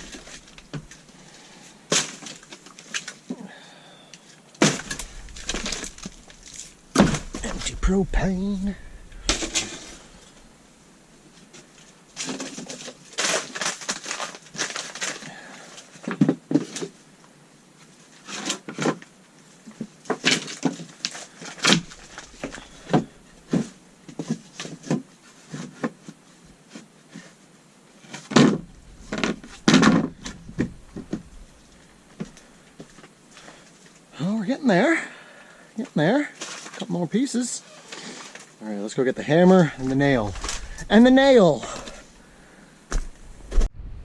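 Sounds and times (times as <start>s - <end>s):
rustling: 0.0s - 3.3s, 4.6s - 15.9s, 20.2s - 25.7s, 28.0s - 34.1s, 37.6s - 43.7s.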